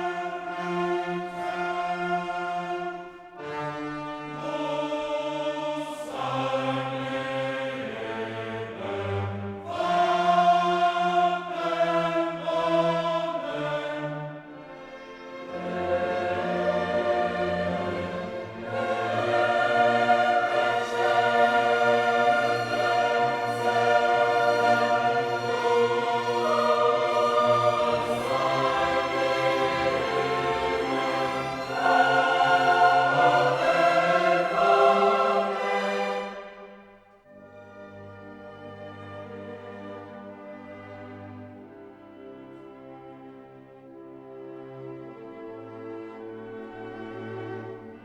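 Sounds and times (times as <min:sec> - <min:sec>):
choir singing sustained chords: 0:00.0 - 0:48.0
orchestra playing: 0:13.6 - 0:48.0.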